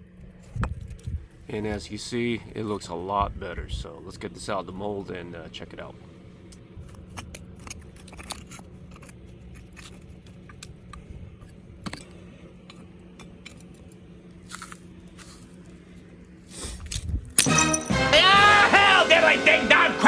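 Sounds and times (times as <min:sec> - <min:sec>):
steady low hum: 0:00.0 - 0:18.2
metal casting clicks and scrapes: 0:06.8 - 0:15.7.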